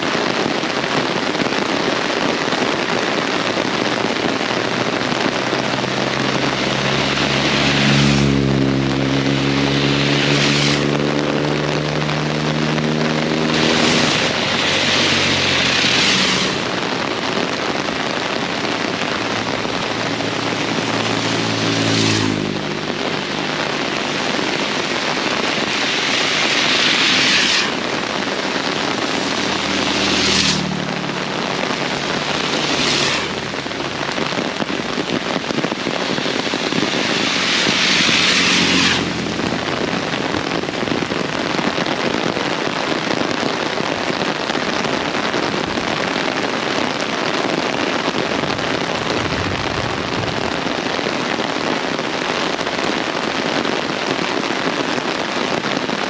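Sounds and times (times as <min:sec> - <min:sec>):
heavy rain pouring: 0:00.0 - 0:56.0
passing vehicle engines humming: 0:03.7 - 0:42.0.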